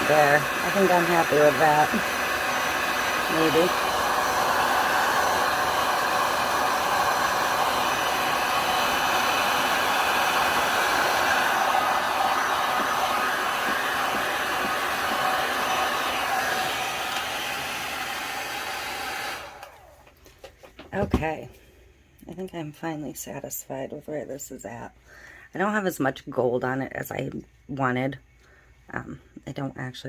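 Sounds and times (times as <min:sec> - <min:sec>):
hot-air blower running: 0:00.0 - 0:20.1.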